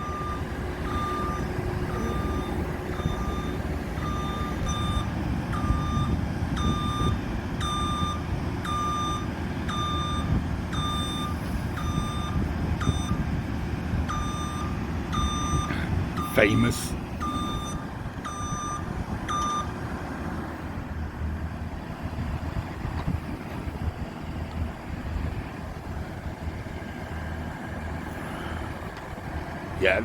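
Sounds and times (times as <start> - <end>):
reversing alarm beeping: 0.0 - 13.3, 14.1 - 19.8
diesel engine rumble: 0.0 - 30.0.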